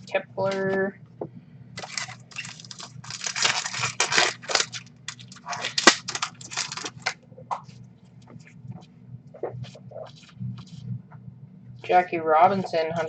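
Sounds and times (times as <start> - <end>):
card wrappers rustling: 1.8 - 7.2.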